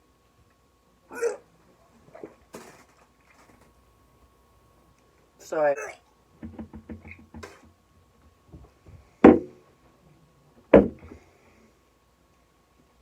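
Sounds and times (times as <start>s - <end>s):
man gagging and dry-heaving: 1.1s - 1.5s, 5.7s - 6.1s.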